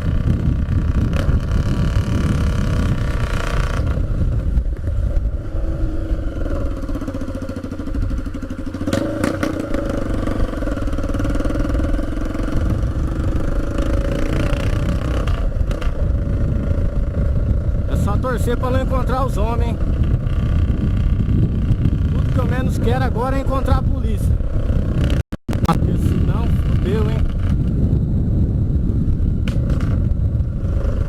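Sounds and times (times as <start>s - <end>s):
loud motorcycle exhaust: 0.0s - 31.0s.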